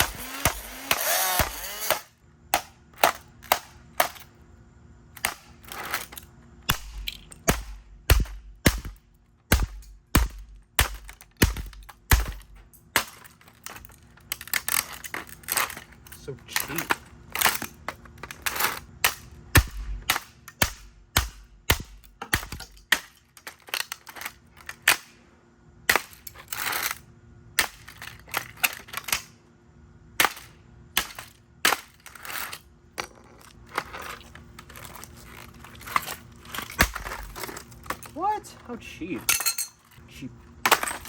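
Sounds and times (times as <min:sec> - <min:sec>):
blows breaking plastic: 0:00.0 - 0:04.2, 0:06.7 - 0:13.3
crunching and scraping: 0:00.0 - 0:29.5, 0:30.1 - 0:41.0.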